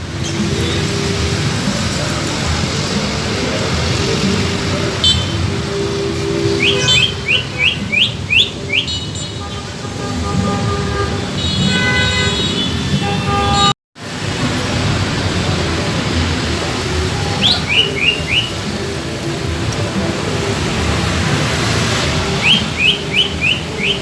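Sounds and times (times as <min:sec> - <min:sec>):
bird singing whistled notes: 0:06.5 - 0:09.0, 0:17.4 - 0:18.6, 0:22.4 - 0:24.0.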